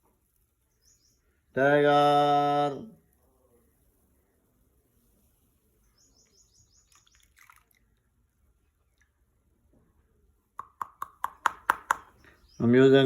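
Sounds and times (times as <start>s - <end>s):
bird chirping trill: 0.7s - 1.4s, 5.8s - 7.3s.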